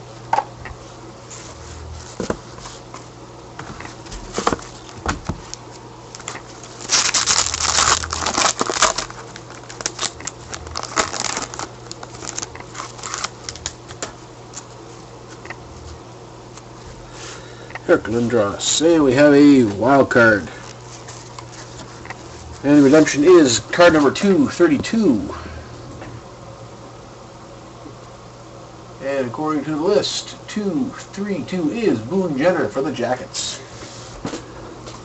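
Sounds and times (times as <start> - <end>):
low hum: 0.0 - 5.0, 6.1 - 29.0
cards being handled: 2.1 - 15.9
card wrappers crinkling: 4.3 - 15.5, 19.5 - 24.2.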